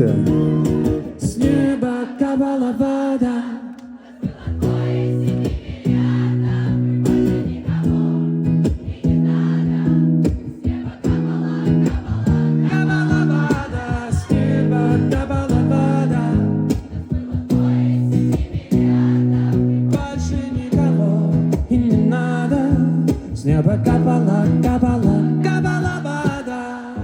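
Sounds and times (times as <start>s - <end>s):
live rock band playing: 0.0s - 1.6s
audience singing along: 0.5s - 22.0s, 25.4s - 27.0s.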